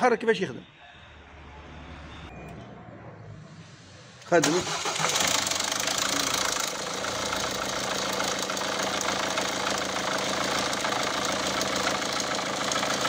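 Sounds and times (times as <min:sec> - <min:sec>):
diesel engine idling: 0:04.4 - 0:13.0.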